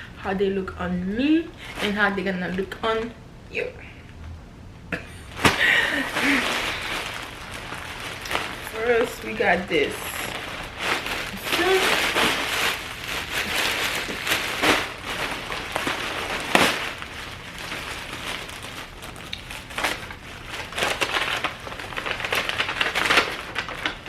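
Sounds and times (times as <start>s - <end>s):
clothing packaging rustling: 5.3s - 24.0s.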